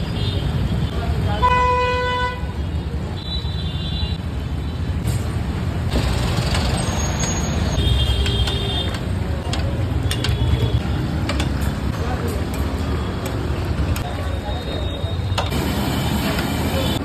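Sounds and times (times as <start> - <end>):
vehicle engines running: 4.5 - 17.0.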